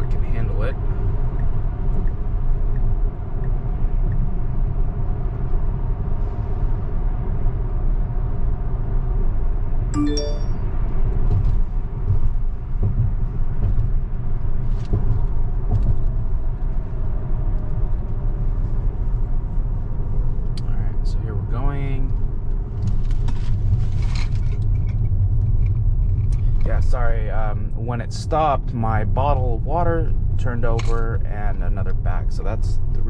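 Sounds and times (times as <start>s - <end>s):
road and tyre rumble: 0.0s - 9.9s, 10.8s - 33.0s
short electronic chime: 10.0s - 10.6s.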